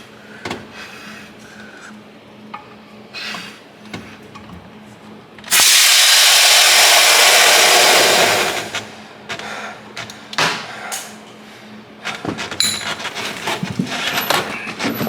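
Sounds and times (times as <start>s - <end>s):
loud steady hissing rush: 5.5s - 9.2s
parts clicking and knocking: 12.0s - 15.0s.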